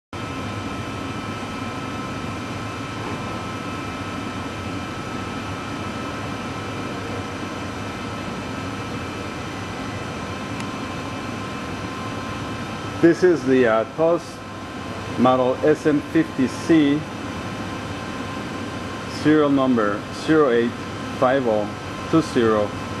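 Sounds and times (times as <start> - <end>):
machinery hum and hiss: 0.2 - 23.0.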